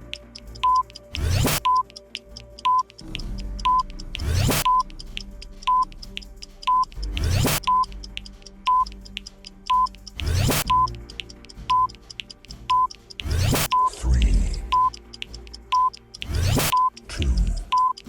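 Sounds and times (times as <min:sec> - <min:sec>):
fast ticking: 0:00.0 - 0:18.0
low music bed: 0:00.0 - 0:18.0
short electronic beep: 0:00.6 - 0:01.8, 0:02.6 - 0:03.0, 0:03.6 - 0:04.9, 0:05.7 - 0:05.9, 0:06.7 - 0:07.9, 0:08.7 - 0:08.9, 0:09.7 - 0:10.9, 0:11.7 - 0:11.9, 0:12.7 - 0:13.9, 0:14.7 - 0:15.0, 0:15.7 - 0:17.0, 0:17.7 - 0:18.0.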